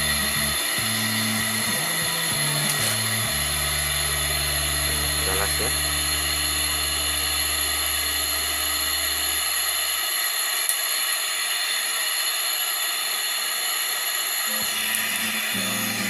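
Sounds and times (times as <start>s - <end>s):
music: 0.0s - 6.4s, 14.5s - 16.0s
low hum: 0.0s - 10.0s
torch flame hissing: 0.0s - 16.0s.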